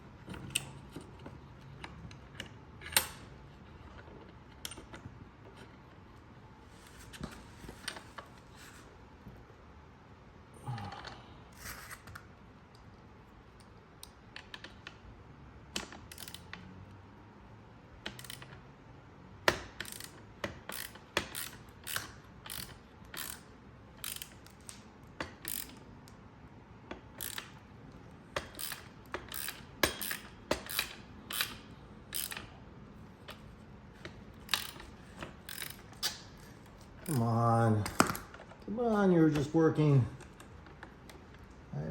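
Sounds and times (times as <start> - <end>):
ratchet wrench clicking: 15.8 - 16.6, 18.1 - 18.5, 19.5 - 25.8, 27.2 - 27.6, 28.4 - 32.5, 34.0 - 36.4.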